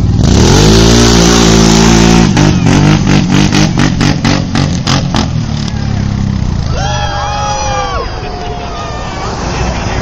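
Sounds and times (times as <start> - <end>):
vehicle engine revving down: 0.0 - 8.0.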